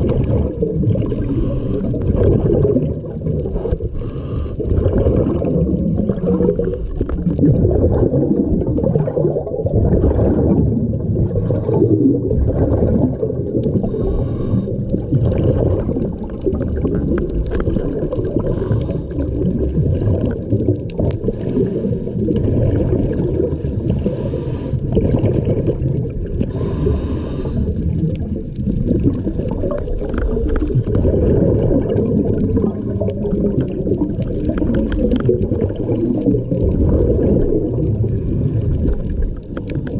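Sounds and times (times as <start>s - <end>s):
regulator bubbling underwater: 0.0s - 39.9s
hissing breath through regulator: 1.1s - 2.0s, 3.6s - 4.7s, 6.1s - 7.0s, 13.8s - 15.0s, 18.4s - 19.3s, 21.2s - 22.2s, 23.8s - 25.0s, 26.5s - 27.8s, 38.0s - 39.0s.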